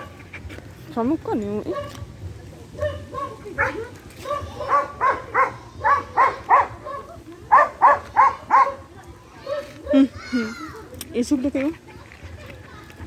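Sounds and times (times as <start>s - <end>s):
dog barking high and short: 2.8s - 8.8s.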